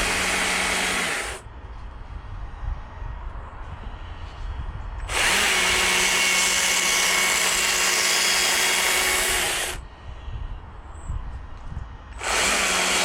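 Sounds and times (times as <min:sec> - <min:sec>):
power tool carving wood: 0:00.0 - 0:01.4, 0:05.1 - 0:09.8, 0:12.2 - 0:13.0.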